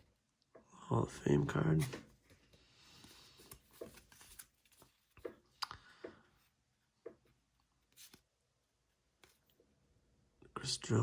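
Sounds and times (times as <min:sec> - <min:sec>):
trading cards being handled: 0:02.9 - 0:05.4.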